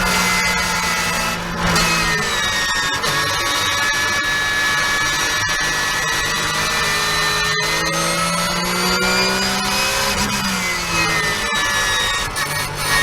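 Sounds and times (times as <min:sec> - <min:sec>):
race car engine revving: 0:00.0 - 0:13.0.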